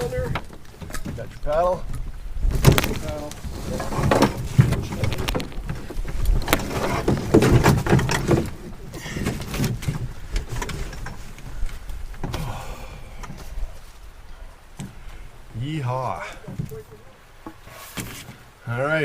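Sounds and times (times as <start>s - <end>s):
rustling: 0.0s - 15.5s, 16.2s - 18.6s
knocks and thuds of gear: 2.5s - 12.6s.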